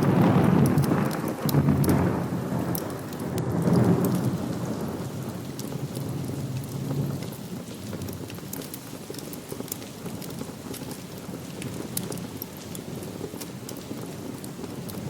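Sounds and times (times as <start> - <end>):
sharp crackles: 0.0 - 15.0
steady rain: 0.0 - 15.0
thunder rumbling: 0.0 - 15.0.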